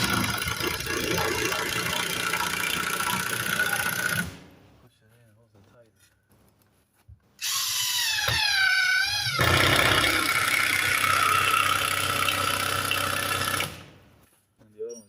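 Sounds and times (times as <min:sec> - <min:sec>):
power tool driving fastener into wood: 0:00.0 - 0:04.4, 0:07.4 - 0:13.9.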